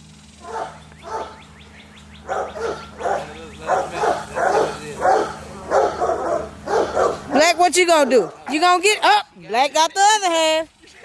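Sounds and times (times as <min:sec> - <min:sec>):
dogs barking: 0:00.4 - 0:09.2.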